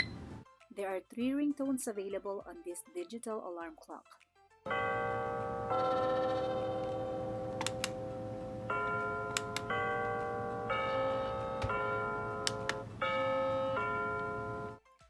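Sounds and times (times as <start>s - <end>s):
electronic chime melody: 4.7s - 14.8s
sharp clicks: 6.3s - 8.2s, 8.9s - 10.2s, 11.5s - 13.0s.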